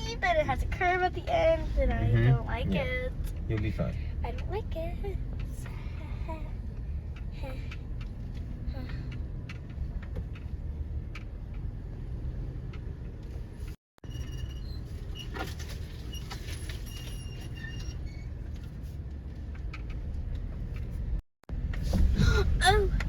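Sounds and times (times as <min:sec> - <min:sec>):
engine and tyres rumbling: 0:00.0 - 0:23.0
clicks and rattles from car body: 0:18.4 - 0:22.2.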